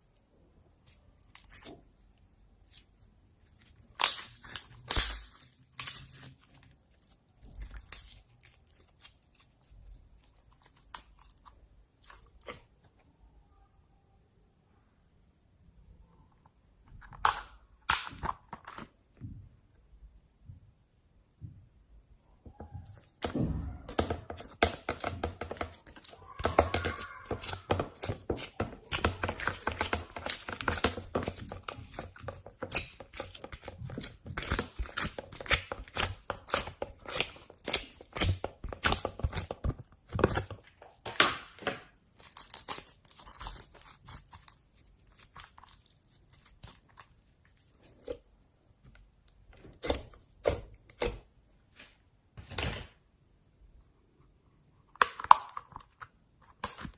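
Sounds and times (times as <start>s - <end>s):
slime clicking and popping: 3.9s - 6.3s.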